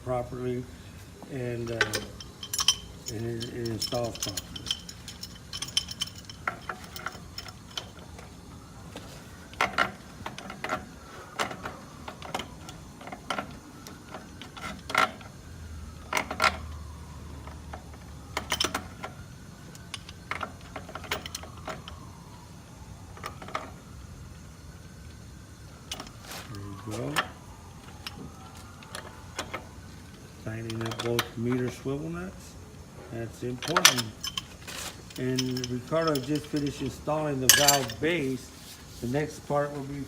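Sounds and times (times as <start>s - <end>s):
wrench clicking on metal nuts: 1.6s - 8.0s, 33.6s - 38.1s.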